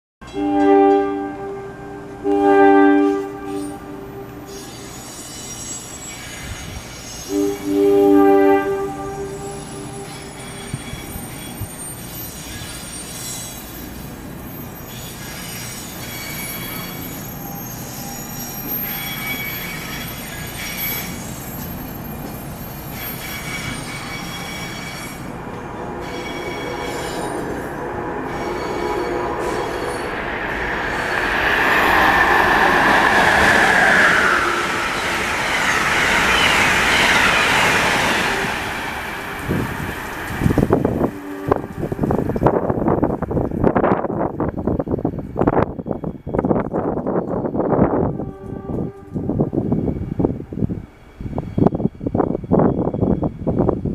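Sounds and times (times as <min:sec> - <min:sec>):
train horn blast: 0:00.3 - 0:04.8, 0:07.2 - 0:10.4, 0:24.6 - 0:38.8, 0:40.5 - 0:42.4, 0:47.8 - 0:49.5
train rumble: 0:00.5 - 0:53.9
wheel squeal on rails: 0:03.0 - 0:50.3.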